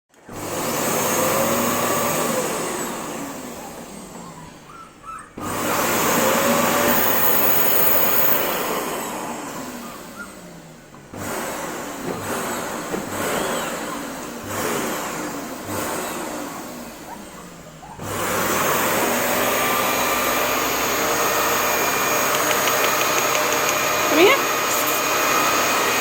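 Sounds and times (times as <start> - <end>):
vacuum cleaner running: 0.1 - 26.0.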